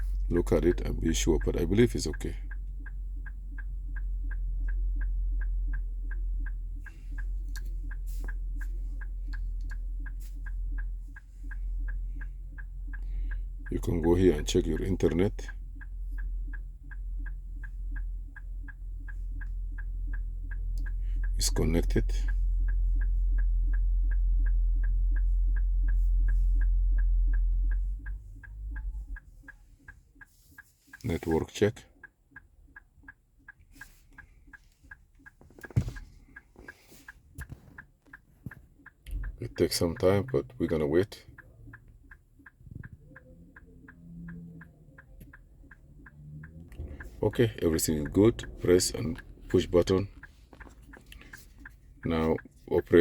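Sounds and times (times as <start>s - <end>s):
hazard flasher ticking: 37.4s - 53.0s
low hum: 42.8s - 52.7s.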